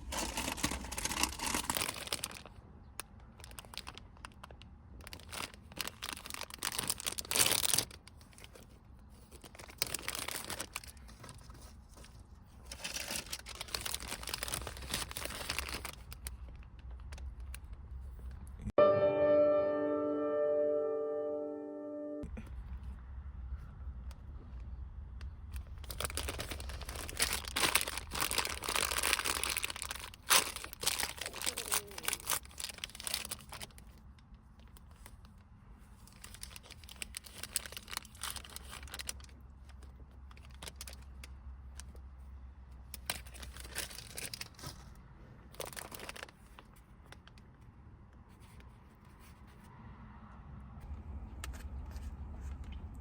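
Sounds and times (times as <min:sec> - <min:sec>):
wrapper crinkling and tearing: 0:00.0 - 0:02.6, 0:03.3 - 0:17.5, 0:25.6 - 0:34.0, 0:36.0 - 0:41.9, 0:42.9 - 0:44.9, 0:45.5 - 0:47.4
low steady hum: 0:00.0 - 0:47.4.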